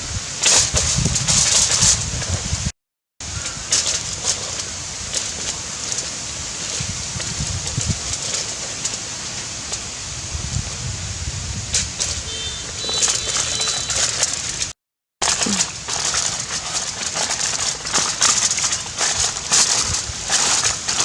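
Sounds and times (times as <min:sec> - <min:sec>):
dense crackling and crunching: 0:03.4 - 0:09.9, 0:11.8 - 0:21.0.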